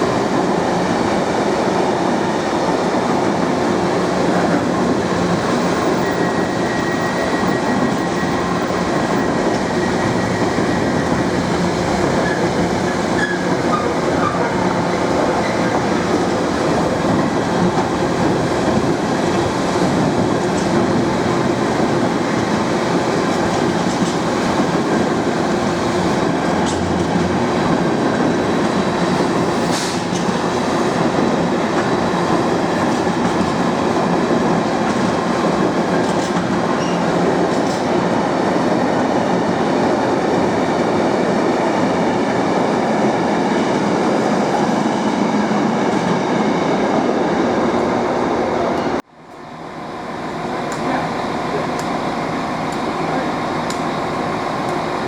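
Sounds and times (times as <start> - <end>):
train wheels rumbling: 0.0 - 55.0
faint rail-joint clicks: 36.0 - 37.9, 50.7 - 51.0, 53.6 - 53.9.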